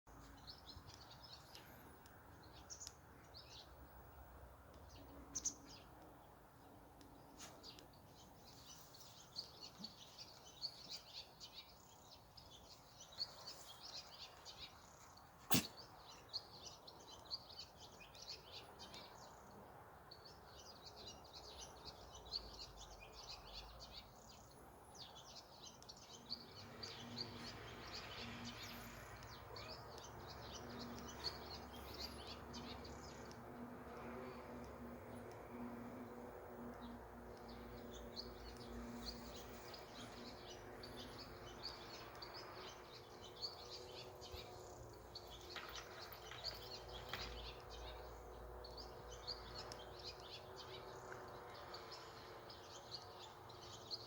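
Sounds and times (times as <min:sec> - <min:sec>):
small birds chirping: 0:00.1 - 0:54.0.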